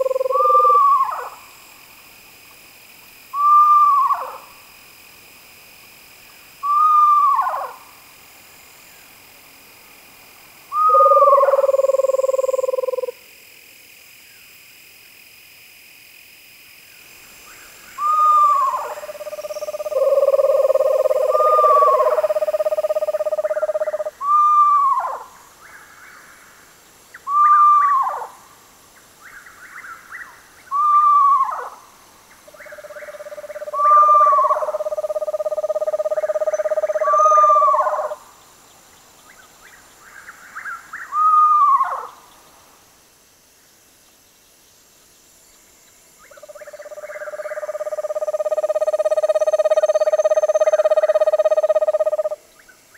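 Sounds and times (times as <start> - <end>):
owl whistled calls: 0.0 - 1.4, 3.3 - 4.4, 6.6 - 7.8, 10.7 - 13.1, 18.0 - 20.4, 23.8 - 25.2, 27.3 - 28.3, 30.7 - 31.8, 41.0 - 42.2.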